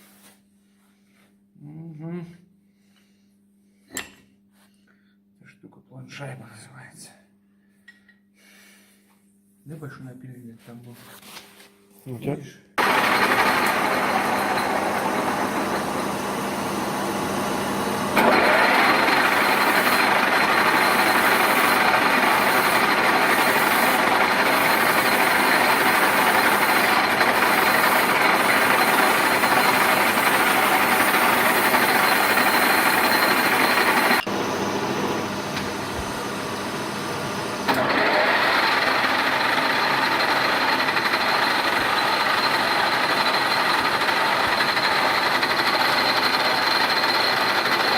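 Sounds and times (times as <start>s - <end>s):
metal lathe whirring: 12.8s - 47.9s.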